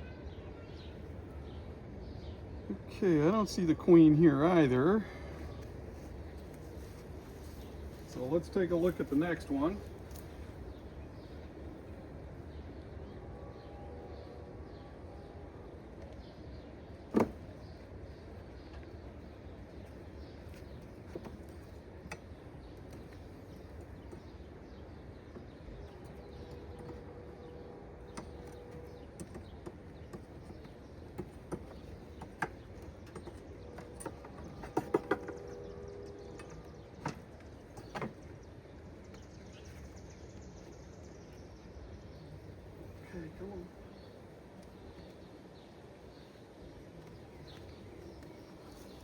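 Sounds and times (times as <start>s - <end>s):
wooden hive frames knocking: 20.5s - 38.4s.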